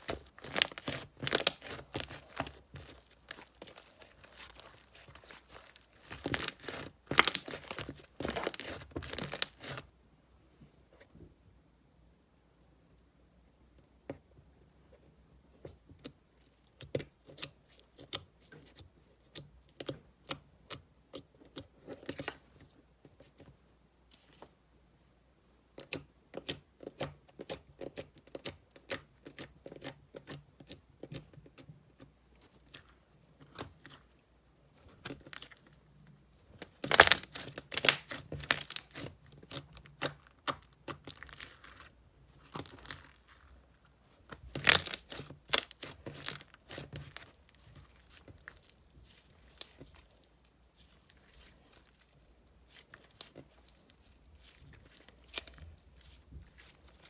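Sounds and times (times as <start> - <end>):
slime clicking and popping: 0.0 - 9.8, 36.7 - 41.8, 44.4 - 48.7.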